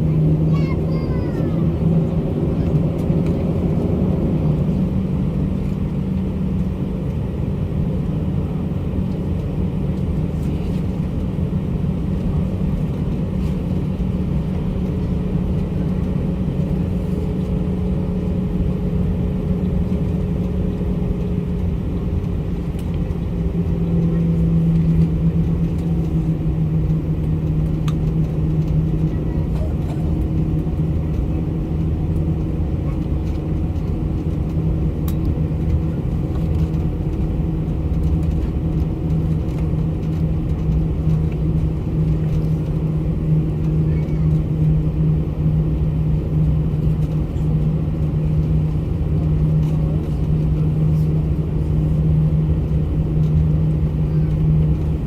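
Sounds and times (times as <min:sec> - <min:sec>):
airliner engine drone: 0:00.0 - 0:55.0
low hum: 0:00.0 - 0:55.0.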